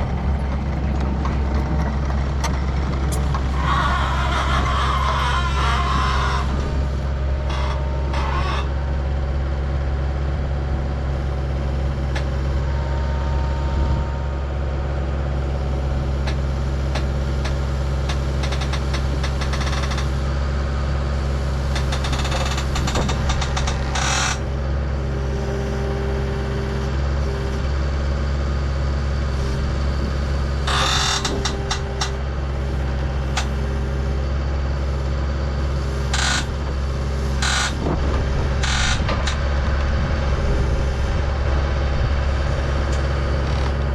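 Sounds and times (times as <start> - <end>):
skid steer engine under load: 0.0 - 43.9.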